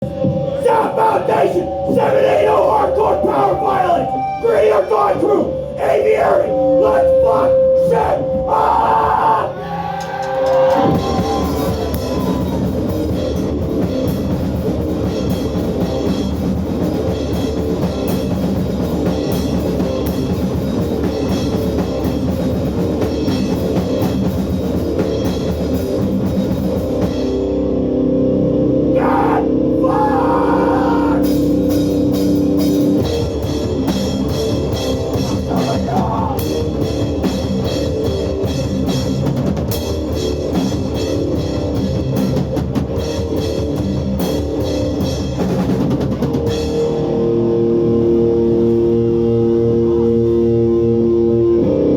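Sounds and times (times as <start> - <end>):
distorted guitar and bass: 0.0 - 51.9
rapid drumming: 10.0 - 27.3, 31.4 - 46.7.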